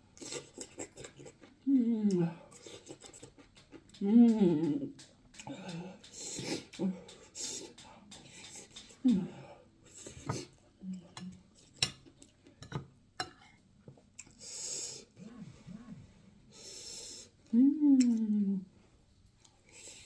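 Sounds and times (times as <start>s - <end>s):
chewing and mouth noises: 0.2s - 10.6s, 14.1s - 15.9s
cutlery clicking against a plate: 11.2s - 13.4s.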